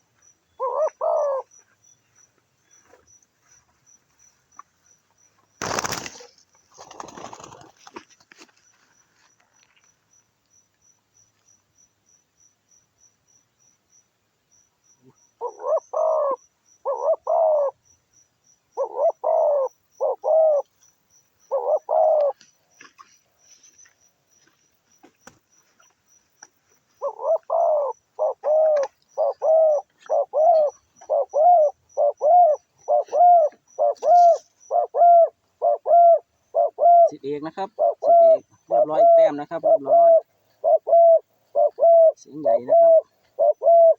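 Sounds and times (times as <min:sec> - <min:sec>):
dove cooing: 0:00.0 - 0:01.5, 0:15.4 - 0:17.8, 0:18.8 - 0:20.7, 0:21.5 - 0:22.4, 0:27.0 - 0:43.9
faint rapid insect ticking: 0:00.0 - 0:43.9.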